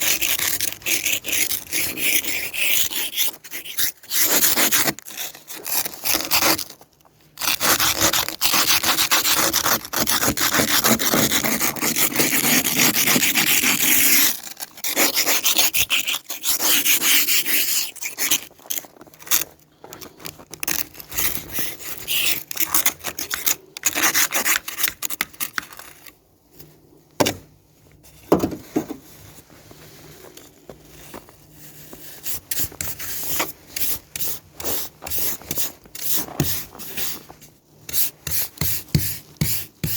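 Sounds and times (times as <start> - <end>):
ice scraper scraping glass: 0.0 - 6.7, 7.4 - 19.4, 20.5 - 26.1.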